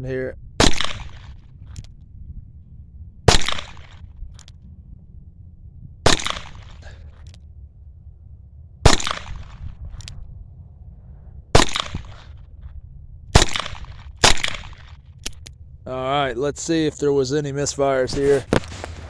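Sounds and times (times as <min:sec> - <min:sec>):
revolver gunshots: 0:00.6 - 0:01.9, 0:03.2 - 0:04.6, 0:06.0 - 0:07.4, 0:08.8 - 0:10.6, 0:11.2 - 0:15.5.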